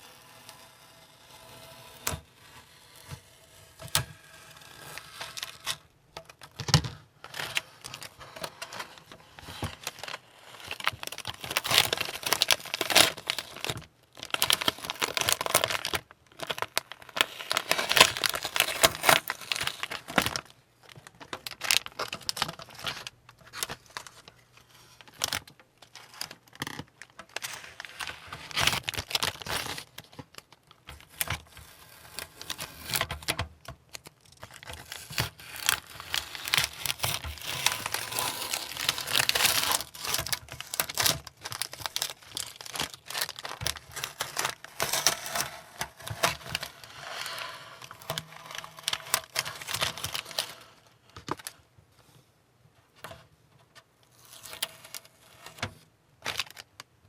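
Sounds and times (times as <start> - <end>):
masking tape peeling off plastic: 9.8 - 20.4, 33.9 - 50.8.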